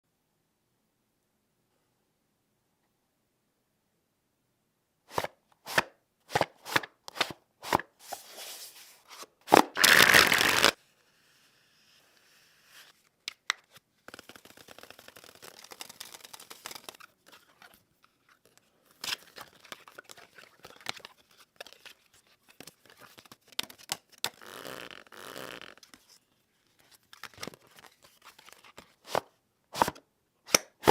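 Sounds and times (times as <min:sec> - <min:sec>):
playing cards being shuffled: 0:05.1 - 0:10.8, 0:12.2 - 0:30.9.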